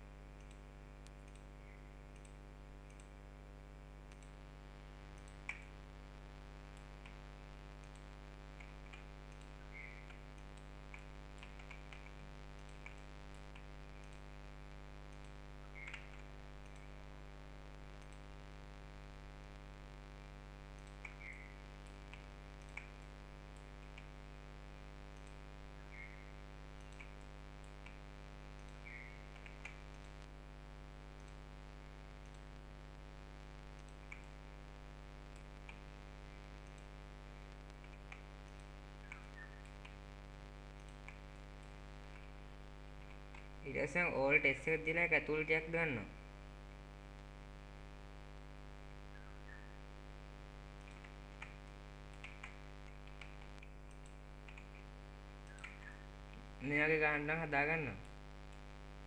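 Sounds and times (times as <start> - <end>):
low electrical hum: 0.0 - 59.0
computer mouse and keyboard clicks: 0.4 - 3.2, 4.0 - 4.4, 5.2 - 5.8, 6.7 - 7.2, 7.8 - 14.3, 15.1 - 17.0, 17.7 - 18.4, 20.7 - 24.2, 25.1 - 30.4, 31.2 - 31.5, 32.2 - 32.5, 33.7 - 34.4, 35.2 - 45.9, 50.8 - 57.4.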